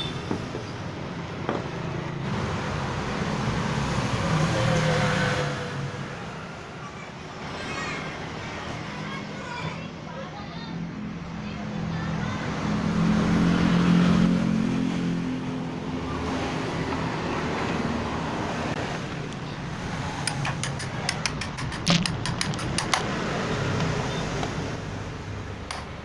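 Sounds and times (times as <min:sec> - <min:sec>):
sharp ticks and knocks: 0:20.2 - 0:24.6, 0:25.6 - 0:26.0.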